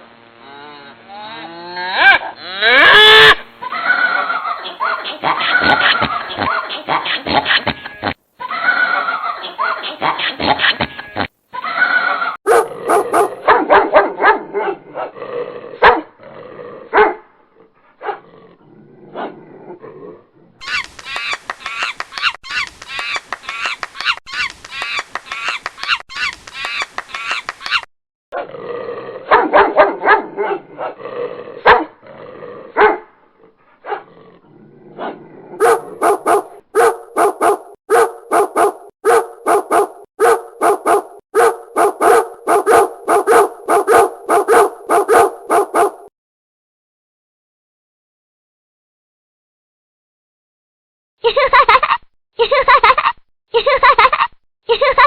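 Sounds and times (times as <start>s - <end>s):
dogs barking and yipping: 3.1s - 7.8s, 11.8s - 15.1s, 29.3s - 31.0s, 31.6s - 31.9s, 32.8s - 33.1s, 35.6s - 46.1s.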